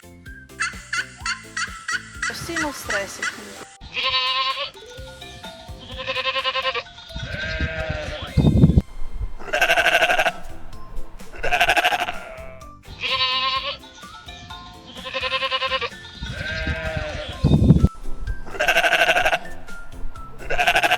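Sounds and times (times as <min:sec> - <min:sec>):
background music: 0:00.0 - 0:20.9
sheep bleating: 0:03.8 - 0:04.8, 0:05.9 - 0:08.6, 0:09.4 - 0:10.5, 0:11.4 - 0:13.8, 0:15.0 - 0:17.6, 0:18.5 - 0:19.6, 0:20.4 - 0:20.9.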